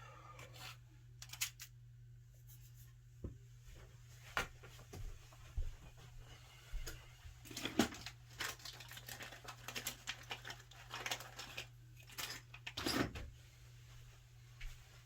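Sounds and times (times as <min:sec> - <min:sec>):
small parts and tools clicking: 0:01.2 - 0:01.7
loud clatter of parts: 0:07.5 - 0:13.2.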